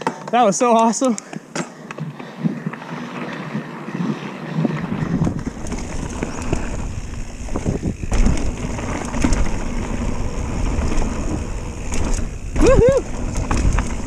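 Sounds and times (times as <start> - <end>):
bike tyre and frame noise: 0.0 - 14.0
wind rushing over microphone: 3.5 - 14.0.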